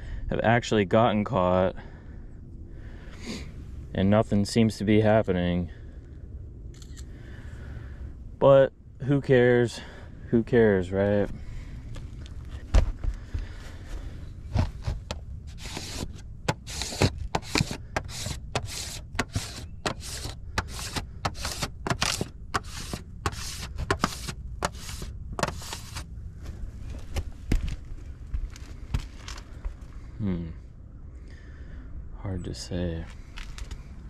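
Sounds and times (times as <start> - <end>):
chalk scraping on roof shingles: 14.5 - 26.1.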